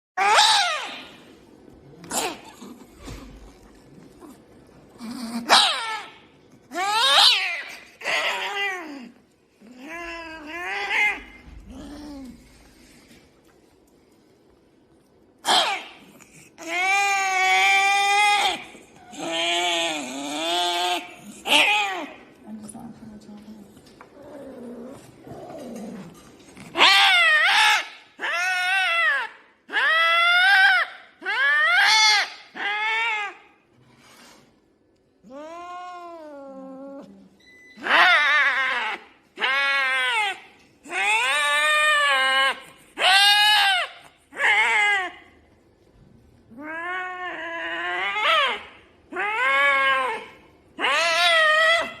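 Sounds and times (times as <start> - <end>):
angry cat yowling: 37.8 - 45.2, 46.5 - 52.0.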